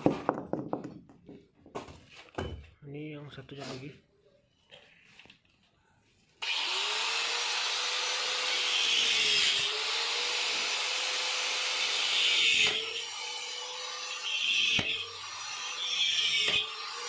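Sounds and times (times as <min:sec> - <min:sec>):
power cutting tool running: 0:06.4 - 0:17.0.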